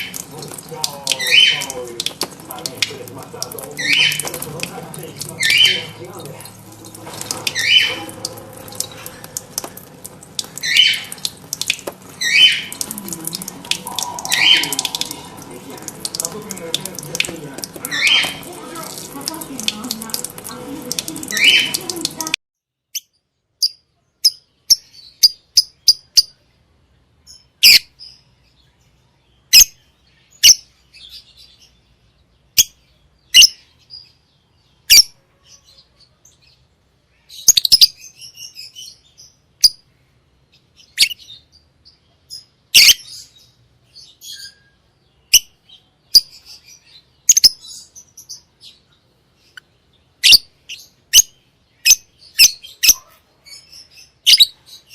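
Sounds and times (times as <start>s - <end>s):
lovebirds chirping: 0.0s - 22.3s
rapid twittering: 0.0s - 22.4s.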